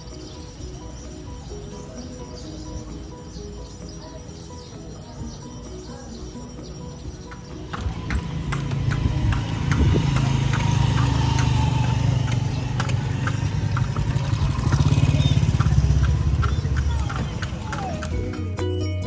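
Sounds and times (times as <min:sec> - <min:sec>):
horse hooves clip-clopping on road: 0:07.2 - 0:18.6
vehicle engine hum: 0:07.3 - 0:18.6.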